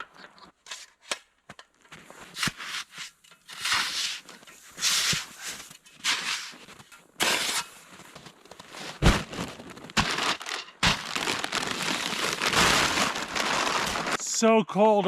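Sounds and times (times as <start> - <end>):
frozen plastic crinkling: 8.0 - 14.2.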